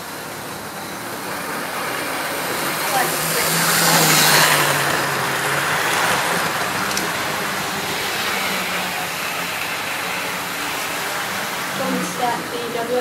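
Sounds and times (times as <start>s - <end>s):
electric motor hum: 0.0s - 13.0s
wheels rattling on rails: 0.0s - 13.0s.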